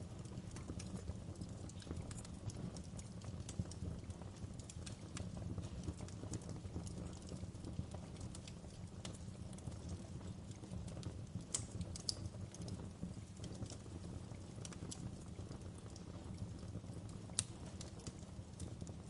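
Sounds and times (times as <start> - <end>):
low fire rumble: 0.0 - 19.0
wood fire crackling and popping: 0.0 - 19.0.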